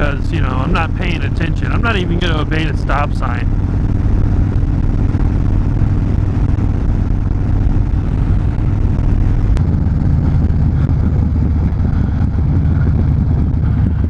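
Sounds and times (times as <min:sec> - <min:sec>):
motorcycle engine running: 0:00.0 - 0:14.0
road and wind noise: 0:00.0 - 0:14.0.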